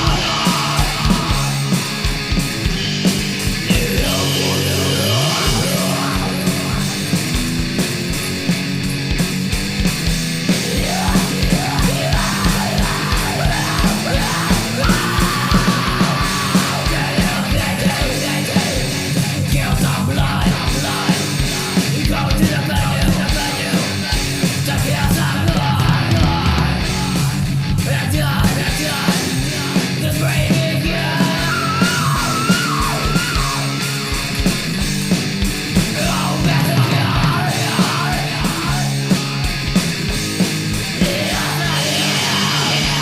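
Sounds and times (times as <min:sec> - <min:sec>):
shouted vocals: 0:00.0 - 0:01.6, 0:03.6 - 0:07.0, 0:10.6 - 0:34.4, 0:35.9 - 0:39.0, 0:41.0 - 0:43.0
distorted guitars and bass: 0:00.0 - 0:43.0
rapid kick drum: 0:05.4 - 0:31.5.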